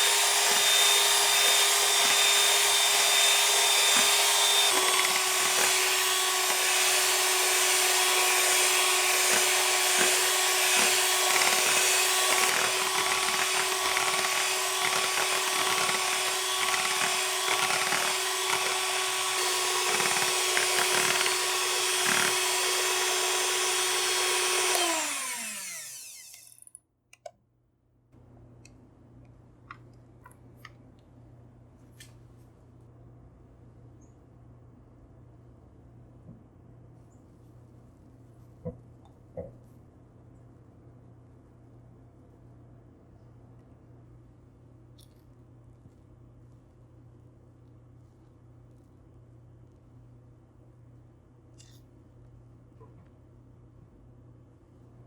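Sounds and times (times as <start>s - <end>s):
electric mixer running: 0.0s - 26.7s.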